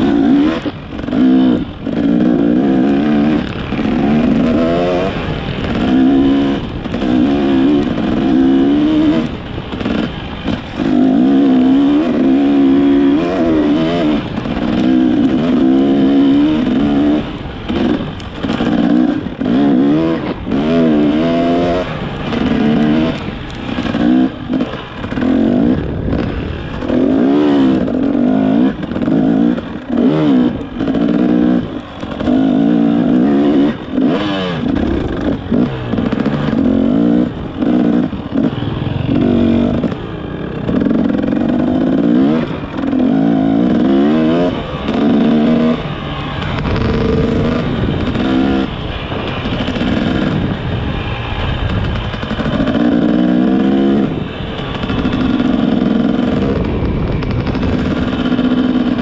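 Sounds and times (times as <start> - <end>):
motorcycle engine revving: 0.0 - 59.0.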